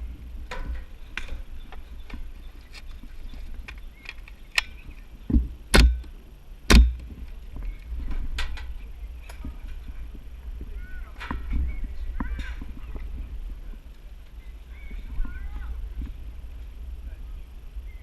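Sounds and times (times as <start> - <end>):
low steady rumble: 0.0 - 18.0
sharp clicks and knocks: 3.6 - 6.1, 6.7 - 9.8.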